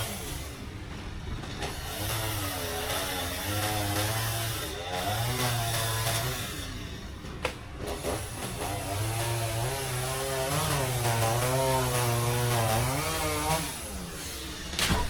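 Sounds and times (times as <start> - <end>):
chainsaw cutting wood: 0.0 - 0.6, 1.5 - 6.9, 7.8 - 14.7.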